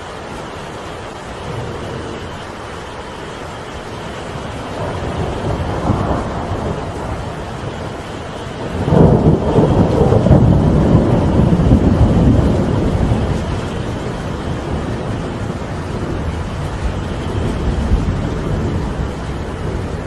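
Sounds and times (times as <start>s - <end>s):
steady rain: 0.0s - 20.0s
rolling thunder: 1.4s - 2.9s, 4.2s - 20.0s.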